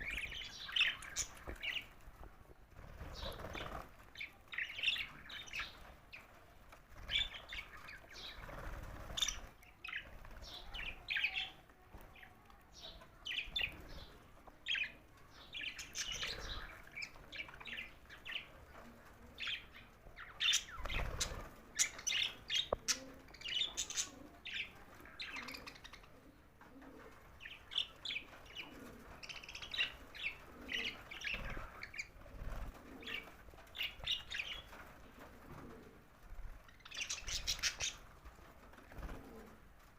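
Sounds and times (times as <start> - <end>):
budgerigars chirping and chattering: 36.8 - 38.0.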